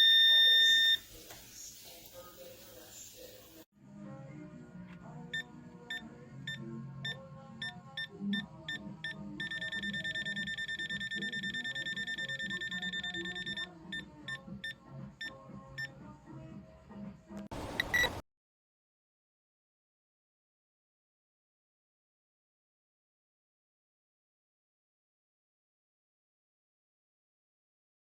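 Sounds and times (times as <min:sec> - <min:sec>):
voltage detector beeping: 0:00.0 - 0:01.2, 0:07.6 - 0:14.8, 0:17.6 - 0:18.2.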